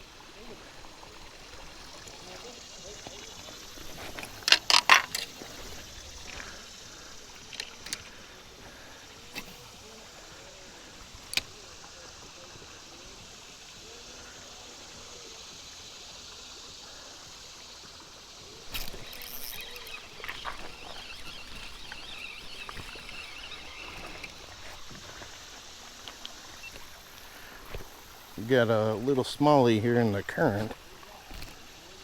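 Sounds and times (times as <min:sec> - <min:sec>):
flowing river water: 0:00.0 - 0:32.0
water splashing: 0:00.0 - 0:32.0
knocks and clicks: 0:04.2 - 0:05.4.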